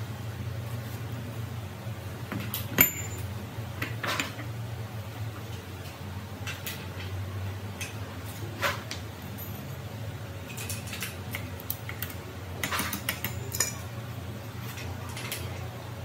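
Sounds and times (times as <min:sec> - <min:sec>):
steady low hum: 0:00.0 - 0:16.0
metal tools clinking and scraping: 0:02.4 - 0:03.3, 0:10.4 - 0:11.2, 0:12.6 - 0:14.0, 0:14.6 - 0:15.6.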